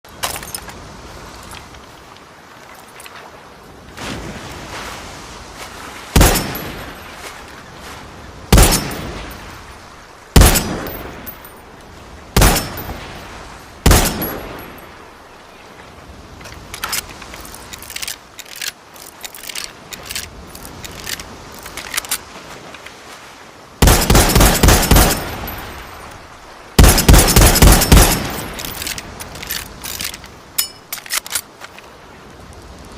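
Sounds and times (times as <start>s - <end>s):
rifle shots: 6.2s - 6.8s, 8.5s - 9.0s, 10.4s - 10.9s, 12.4s - 12.9s, 13.9s - 14.5s, 23.8s - 25.6s, 26.8s - 28.8s.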